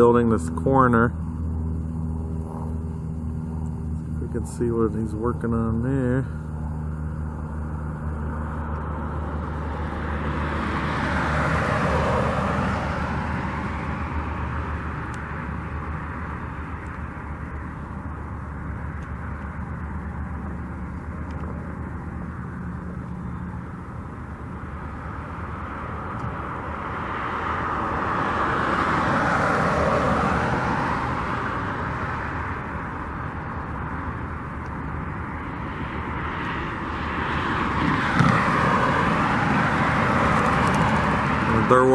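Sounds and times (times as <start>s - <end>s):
steady low hum: 0.0s - 41.9s
vehicles passing: 0.0s - 41.9s.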